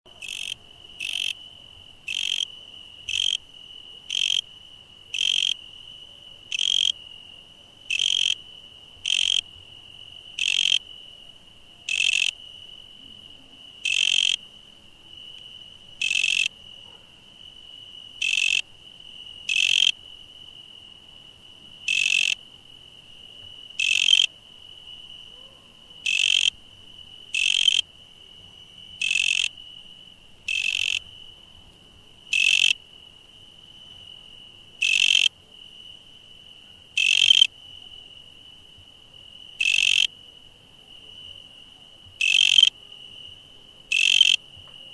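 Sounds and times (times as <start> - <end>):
insect chirps: 0.1 - 44.9
insect high-pitched trill: 0.2 - 5.8, 6.5 - 7.3, 7.9 - 11.2, 11.9 - 12.9, 13.7 - 14.5, 15.3 - 16.5, 18.0 - 20.8, 21.7 - 22.5, 23.1 - 28.0, 28.9 - 31.3, 32.2 - 32.8, 33.8 - 35.3, 36.9 - 38.4, 39.3 - 40.1, 42.2 - 44.9.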